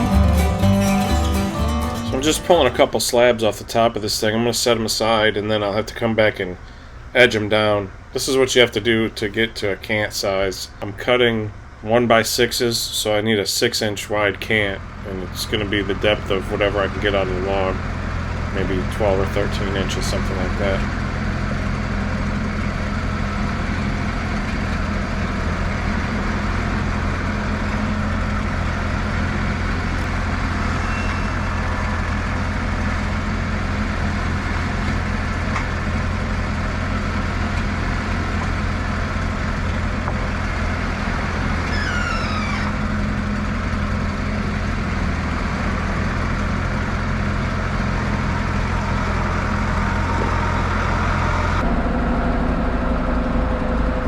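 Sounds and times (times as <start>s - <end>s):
bandsaw mill running: 15.0s - 53.1s.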